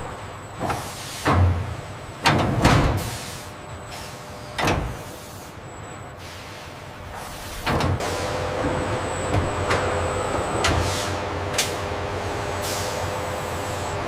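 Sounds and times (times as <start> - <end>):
machinery clunking: 7.1 - 13.2
machinery hissing: 10.8 - 14.0.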